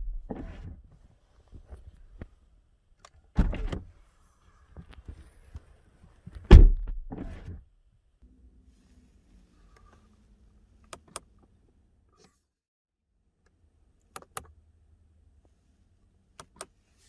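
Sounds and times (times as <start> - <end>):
car door latch clunk: 3.4 - 3.8, 6.5 - 7.4
car door shutting: 3.4 - 3.8, 6.5 - 7.5.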